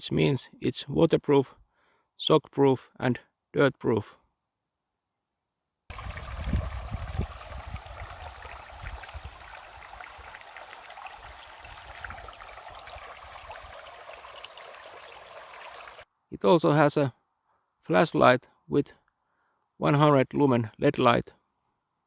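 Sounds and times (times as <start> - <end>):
running water: 5.9 - 16.0.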